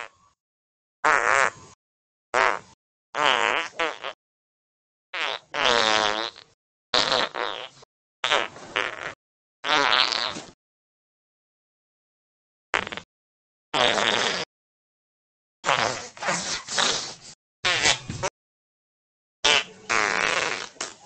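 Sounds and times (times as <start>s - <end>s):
imitation fart noises: 1.0s - 1.8s, 2.4s - 4.2s, 5.2s - 10.6s, 12.7s - 13.1s, 13.8s - 14.5s, 15.6s - 18.3s, 19.4s - 21.0s.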